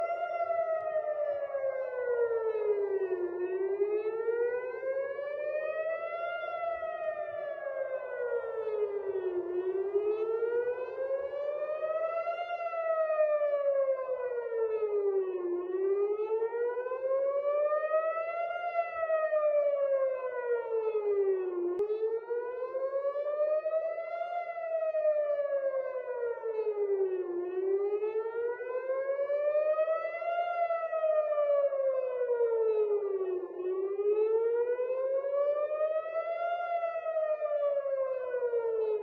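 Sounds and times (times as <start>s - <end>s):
air-raid siren wailing: 0.0s - 39.0s.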